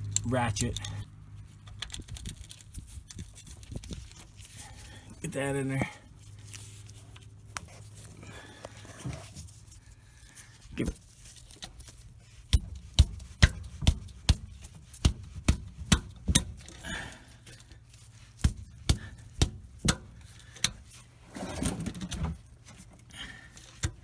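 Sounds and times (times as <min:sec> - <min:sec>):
rough scraping: 0:20.8 - 0:22.8.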